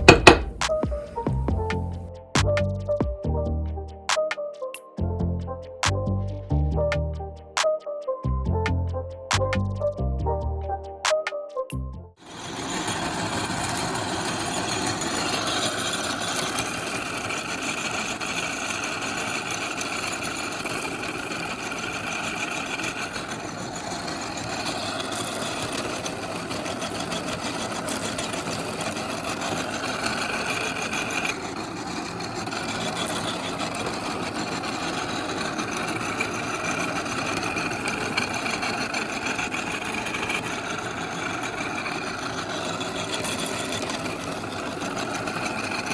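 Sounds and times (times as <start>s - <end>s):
meat grinder motor running: 0.0s - 1.7s, 12.2s - 45.9s.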